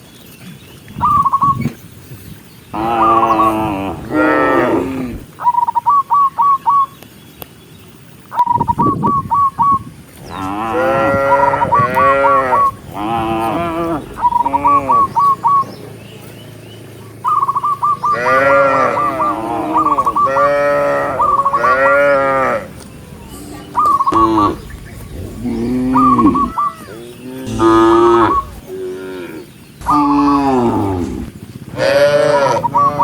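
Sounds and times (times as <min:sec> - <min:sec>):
cattle mooing: 0:02.8 - 0:05.3, 0:10.2 - 0:15.4, 0:18.1 - 0:33.0.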